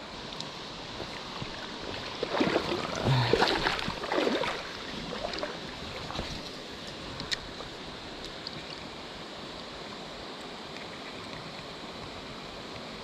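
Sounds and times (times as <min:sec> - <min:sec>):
mountain stream running: 0:00.0 - 0:13.0
wading splashes in water: 0:00.3 - 0:08.9.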